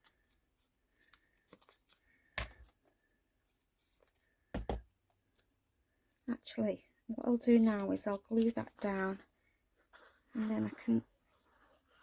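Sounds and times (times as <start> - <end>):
paper rustling: 0.0 - 3.0, 7.4 - 12.0.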